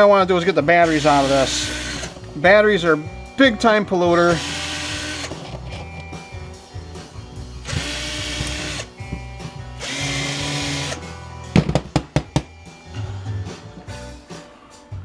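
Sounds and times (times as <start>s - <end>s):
power drill running: 0.8s - 2.2s, 4.3s - 5.7s, 7.6s - 9.0s, 9.8s - 11.0s.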